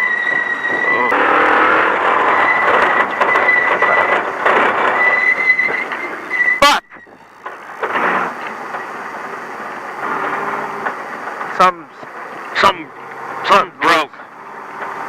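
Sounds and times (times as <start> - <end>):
truck rattling din: 0.0 - 15.0
sharp crack: 1.1 - 6.0, 7.4 - 8.9.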